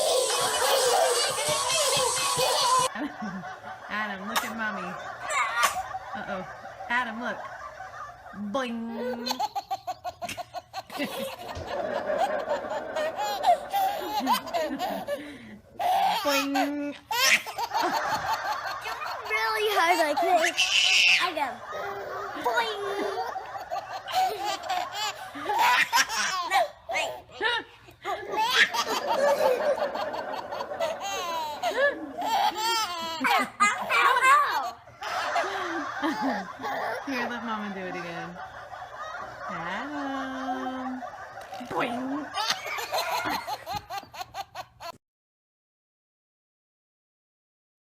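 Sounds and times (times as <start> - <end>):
baby laughing: 0.0 - 3.6, 4.4 - 6.8, 8.9 - 27.5, 28.1 - 37.4, 41.2 - 45.0.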